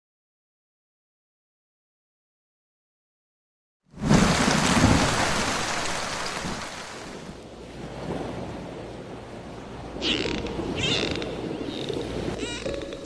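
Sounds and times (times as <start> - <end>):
steady rain: 4.0 - 8.3.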